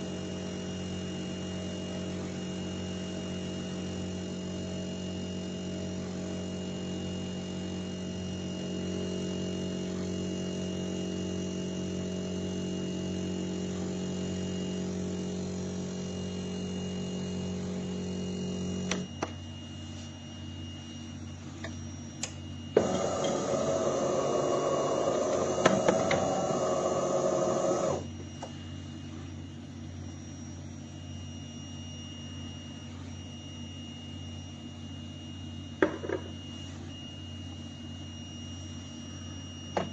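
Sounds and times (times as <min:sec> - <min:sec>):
espresso machine humming: 0:00.0 - 0:19.0, 0:22.8 - 0:29.3
espresso machine grinder whirring: 0:22.8 - 0:28.1.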